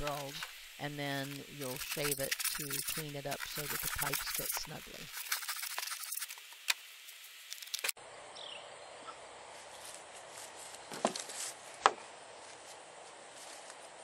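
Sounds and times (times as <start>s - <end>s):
scratchy clicking: 1.2s - 6.8s.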